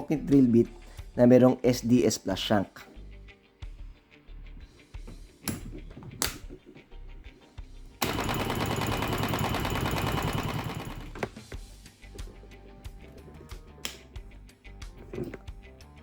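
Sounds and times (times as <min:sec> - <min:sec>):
rotary hammer drilling concrete: 0:08.0 - 0:11.2.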